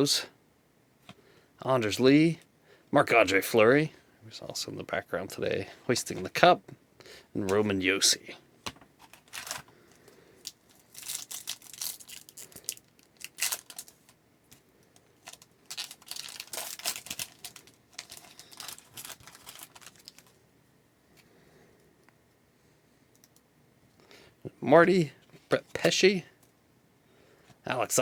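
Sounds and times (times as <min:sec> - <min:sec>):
wrapper tearing and crinkling: 0:09.0 - 0:09.6, 0:10.4 - 0:14.2, 0:15.2 - 0:20.4.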